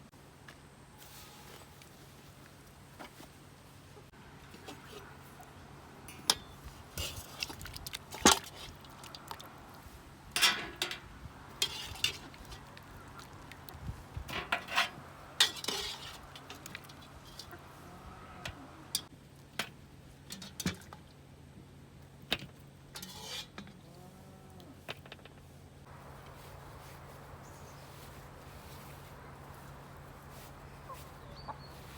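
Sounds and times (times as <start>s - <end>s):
geese honking: 26.0s - 31.9s.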